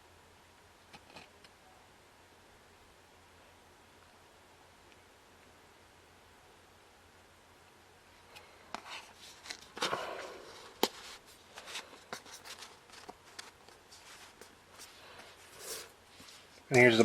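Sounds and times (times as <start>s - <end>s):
packaging rustling: 8.8s - 16.6s.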